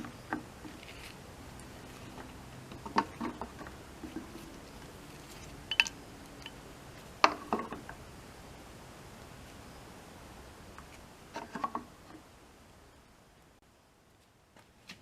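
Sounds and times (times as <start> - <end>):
hard objects clicking and knocking: 2.1 - 4.9, 7.2 - 8.0, 11.3 - 11.9.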